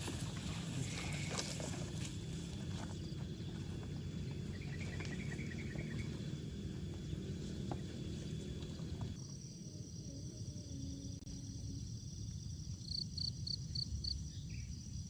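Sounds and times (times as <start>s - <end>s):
steady low rumble: 0.0s - 9.2s
insects chirping: 0.0s - 15.0s
pulsed cricket chirping: 0.0s - 15.0s.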